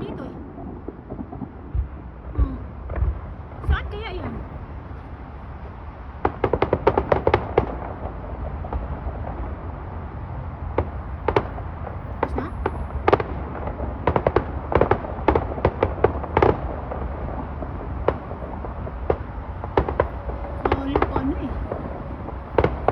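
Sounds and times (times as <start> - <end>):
distant fireworks popping and crackling: 0.0 - 22.9
steady low rumble: 0.0 - 22.9.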